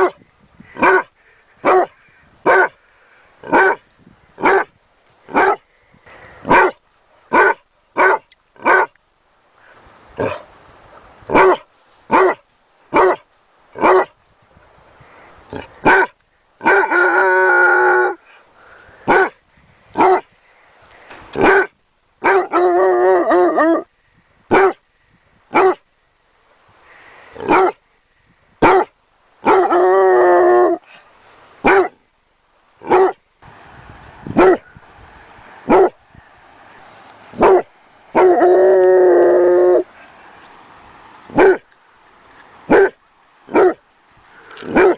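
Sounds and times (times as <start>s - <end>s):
dog barking: 0.8s - 1.9s, 2.5s - 2.8s, 3.5s - 3.8s, 4.4s - 4.7s, 5.3s - 5.6s, 6.5s - 8.9s, 11.3s - 13.2s, 13.8s - 14.1s, 15.8s - 17.0s, 19.1s - 19.4s, 20.0s - 20.3s, 21.4s - 22.6s, 24.5s - 24.8s, 25.5s - 25.8s, 27.4s - 27.8s, 28.6s - 29.8s, 31.6s - 32.0s, 32.8s - 33.2s, 34.4s - 34.6s, 35.7s - 36.0s, 37.4s - 38.4s, 41.3s - 41.6s, 42.7s - 43.8s, 44.7s - 44.9s
dog howling: 38.2s - 39.9s.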